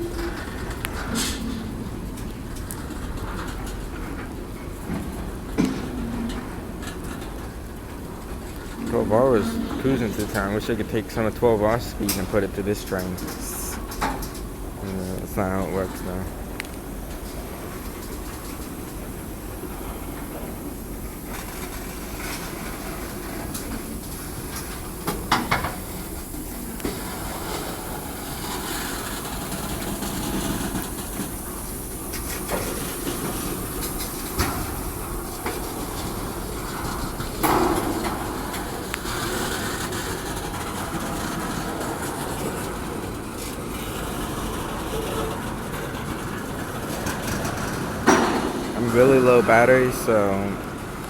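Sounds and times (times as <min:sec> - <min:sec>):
train wheels clacking on rails: 0:00.0 - 0:50.0
sharp knocks of freight cars: 0:32.5 - 0:41.9, 0:47.0 - 0:48.9.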